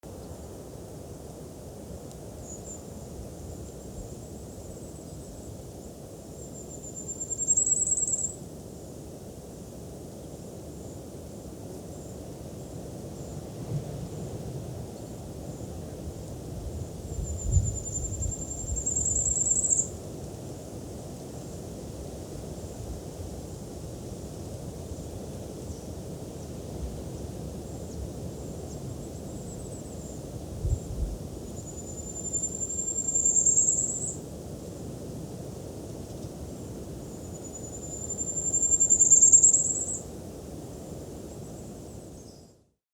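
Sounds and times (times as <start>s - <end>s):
songbird trilling: 17.3s - 19.9s, 31.6s - 34.2s, 37.3s - 40.0s.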